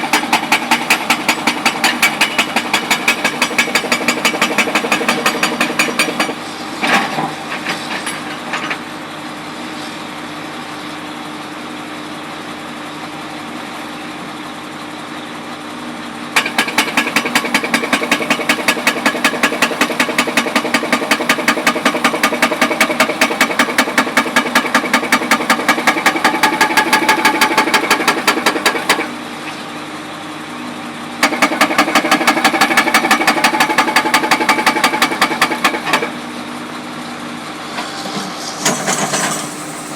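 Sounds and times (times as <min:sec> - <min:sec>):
jackhammer hammering: 0:00.0 - 0:08.8, 0:16.4 - 0:29.2, 0:31.2 - 0:36.6.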